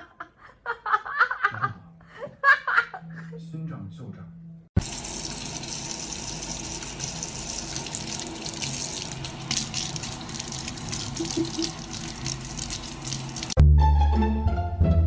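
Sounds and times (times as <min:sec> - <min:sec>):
running water with splashes: 0:04.8 - 0:13.6.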